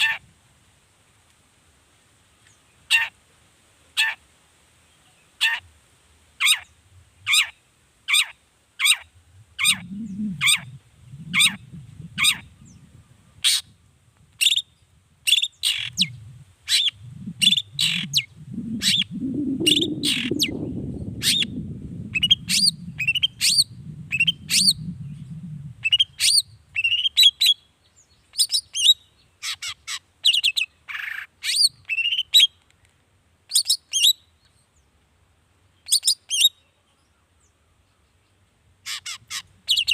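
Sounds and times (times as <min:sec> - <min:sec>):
low rumble: 0:09.2 - 0:13.3, 0:16.0 - 0:25.9
shrike singing: 0:09.6 - 0:13.1, 0:15.3 - 0:27.1.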